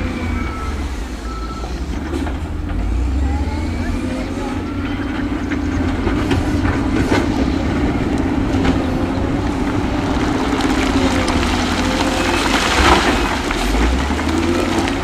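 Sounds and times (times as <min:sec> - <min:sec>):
diesel machinery engine rumble: 0:00.0 - 0:15.0
metal and stone clanking: 0:10.3 - 0:15.0.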